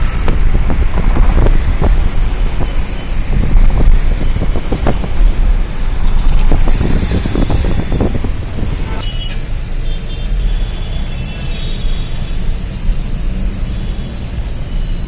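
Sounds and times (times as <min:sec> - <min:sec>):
wind rumble on microphone: 0:00.0 - 0:09.0
road vehicle noise: 0:00.0 - 0:15.0.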